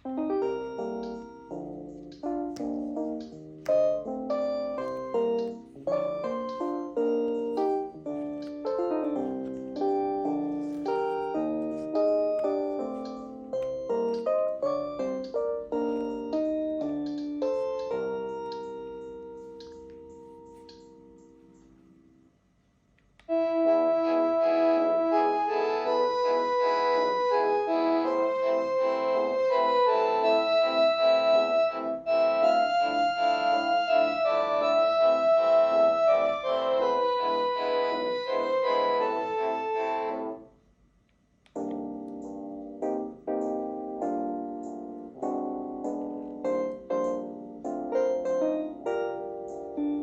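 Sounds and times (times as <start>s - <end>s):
electronic phone ringtone melody: 25.9s - 40.1s.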